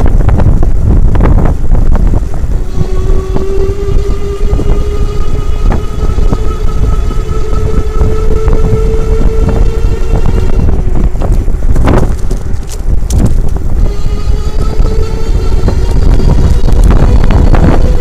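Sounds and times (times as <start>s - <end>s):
heavy low rumble: 0.0s - 18.0s
e-bike motor screeching: 13.8s - 18.0s.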